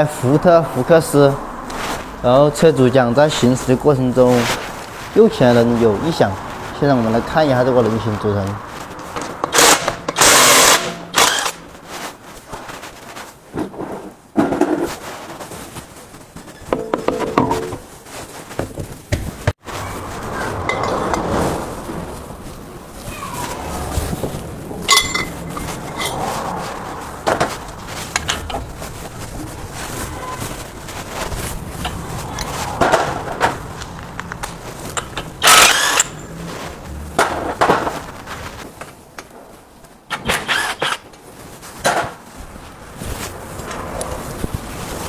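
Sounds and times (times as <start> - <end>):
steady rushing noise: 0.0 - 13.5, 17.0 - 40.1, 41.3 - 45.0
metal knocks and clinks: 16.5 - 17.9, 24.8 - 26.2.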